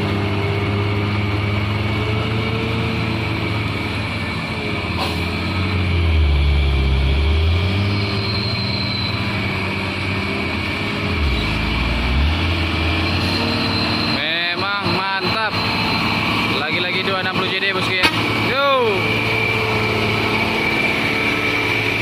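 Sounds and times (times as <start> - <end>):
diesel truck engine under load: 0.0 - 22.0.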